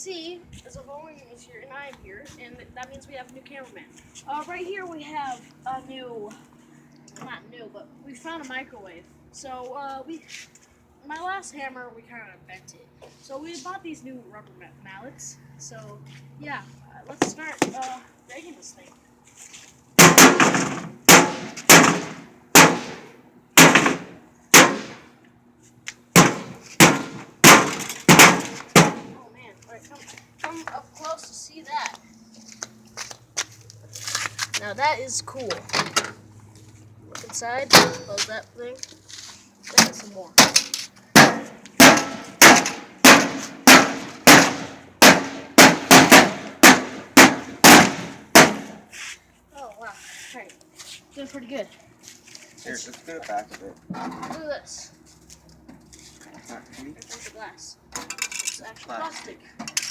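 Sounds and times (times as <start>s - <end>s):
rubber mallet hammering metal casing: 26.2s - 29.1s, 41.2s - 48.8s.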